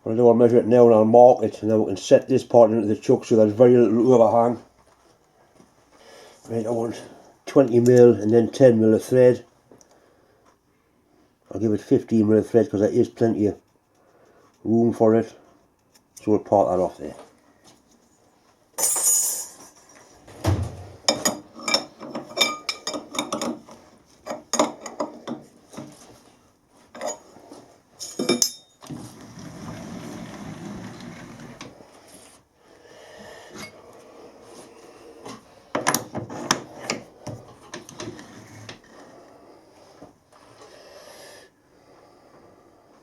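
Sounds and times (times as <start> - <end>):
metal tools clinking: 21.0 - 23.6, 26.9 - 27.3, 28.0 - 28.8.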